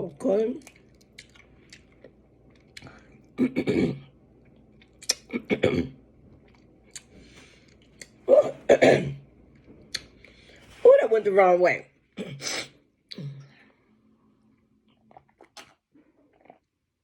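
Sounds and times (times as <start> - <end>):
chewing with wet clicks: 0.5 - 3.3, 4.4 - 5.3, 6.3 - 8.2.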